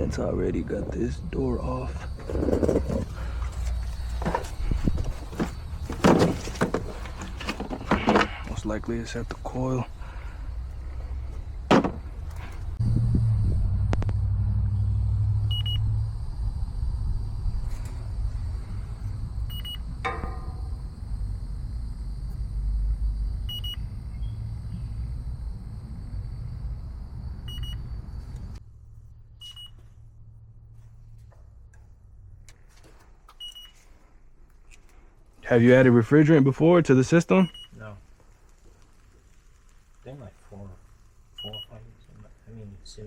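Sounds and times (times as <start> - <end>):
thump: 11.7 - 12.5
short beep: 15.5 - 15.8.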